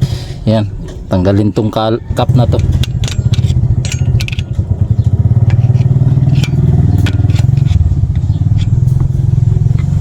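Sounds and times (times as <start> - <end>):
motor engine idling: 2.1 - 10.0
metal clicks and scrapes: 2.4 - 10.0.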